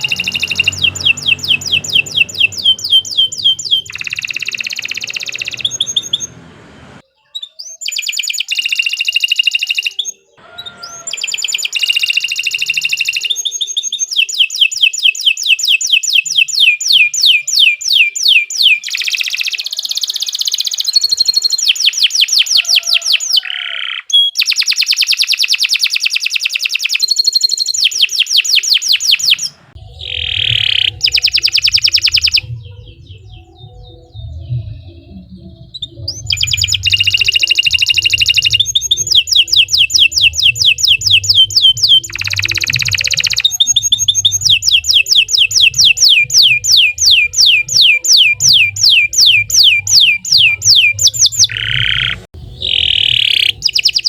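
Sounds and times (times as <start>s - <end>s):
low hum: 0.0s - 7.0s, 29.4s - 43.0s
canary singing trills: 0.0s - 54.0s.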